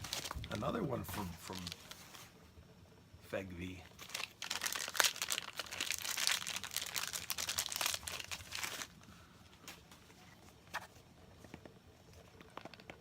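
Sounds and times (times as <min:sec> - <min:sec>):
package crinkling: 0:00.0 - 0:02.1, 0:03.9 - 0:09.1.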